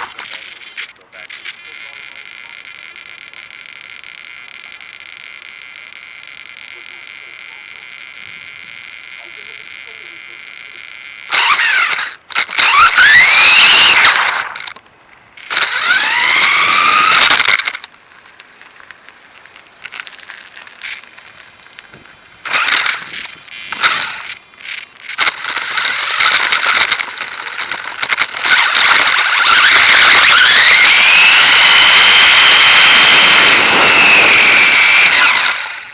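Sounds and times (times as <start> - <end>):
electric motor whining: 1.4 - 14.8, 15.4 - 19.0, 19.8 - 35.9
harsh rushing noise: 25.2 - 35.9.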